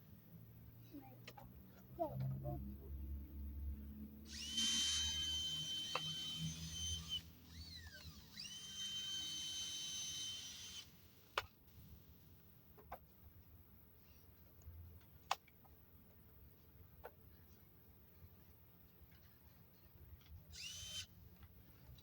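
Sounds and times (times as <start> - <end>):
power drill boring into wood: 4.3 - 11.4, 20.5 - 21.1.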